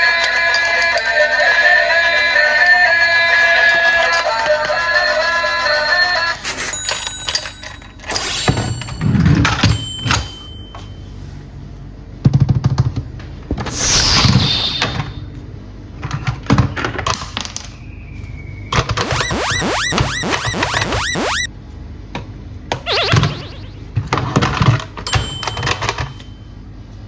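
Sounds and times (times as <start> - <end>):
falling whistle-like sweep: 13.7 - 15.0, 18.9 - 21.5, 22.9 - 23.9
short electronic tones: 19.0 - 21.5, 22.9 - 23.9.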